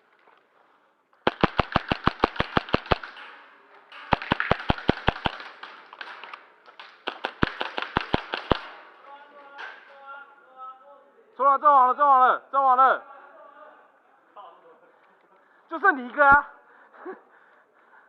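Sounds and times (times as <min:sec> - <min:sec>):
airsoft gun firing rapid shots: 0:01.2 - 0:03.2, 0:04.0 - 0:08.9.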